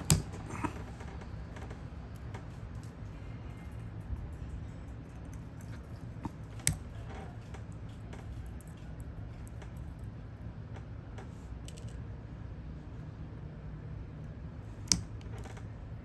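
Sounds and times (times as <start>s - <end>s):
steady low hum: 0.0s - 16.0s
hand tool clicks and ticks: 5.3s - 6.9s.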